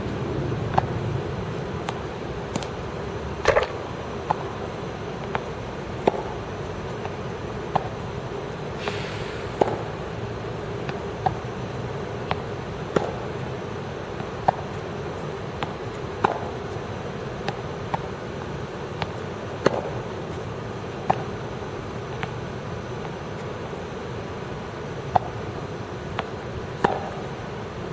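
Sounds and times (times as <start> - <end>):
steady background hum: 0.0 - 27.9
balls bouncing on court: 0.6 - 1.0, 1.8 - 2.8, 3.4 - 4.6, 5.2 - 8.0, 9.6 - 9.9, 12.2 - 13.5, 14.1 - 18.1, 18.9 - 23.5, 25.1 - 25.5, 26.1 - 27.3
tennis balls struck by rackets: 0.6 - 1.1, 1.8 - 8.2, 9.5 - 10.1, 10.7 - 23.5, 25.0 - 27.4.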